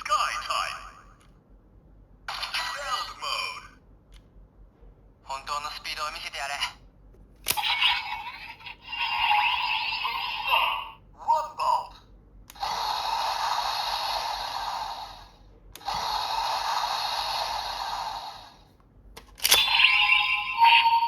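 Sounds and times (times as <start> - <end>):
toy electronic sound effects: 7.5 - 12.0, 19.4 - 21.0.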